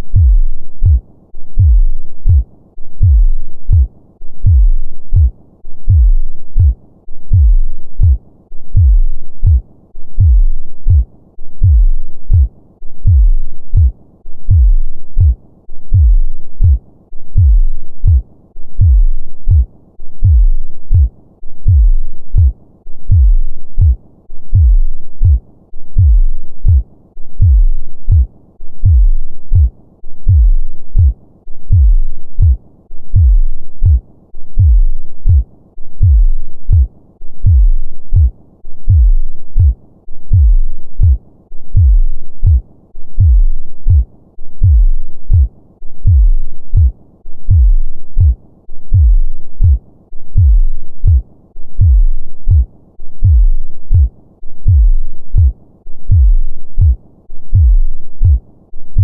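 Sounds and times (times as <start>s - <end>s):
heartbeat thumps: 0.0s - 9.6s, 10.2s - 18.2s, 18.8s - 51.2s, 51.8s - 59.0s.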